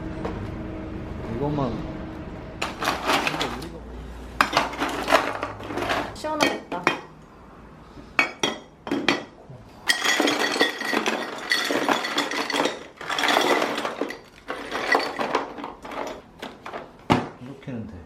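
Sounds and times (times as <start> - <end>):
dishes and cutlery clattering: 2.6 - 3.7, 4.4 - 7.1, 8.2 - 17.3.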